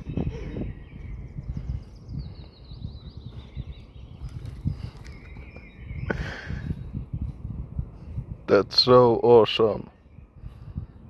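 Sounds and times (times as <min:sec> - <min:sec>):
bird trilling high chirps: 0:00.0 - 0:07.3
wind buffeting microphone: 0:00.0 - 0:11.0.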